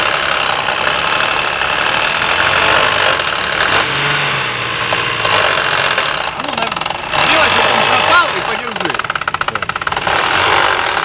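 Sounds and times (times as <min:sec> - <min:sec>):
car engine knocking: 0:04.5 - 0:11.0.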